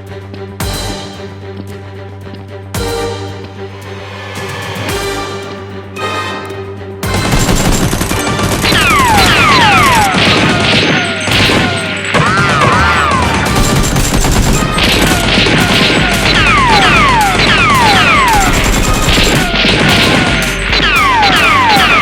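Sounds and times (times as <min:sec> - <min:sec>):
background music: 0:00.0 - 0:22.0
rapid gunfire: 0:07.0 - 0:22.0.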